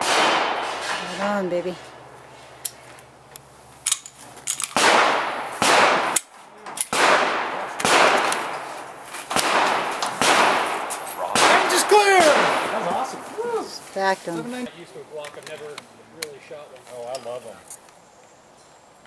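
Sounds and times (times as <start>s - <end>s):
handgun shots: 0.0s - 1.0s, 4.6s - 8.5s, 9.3s - 12.6s.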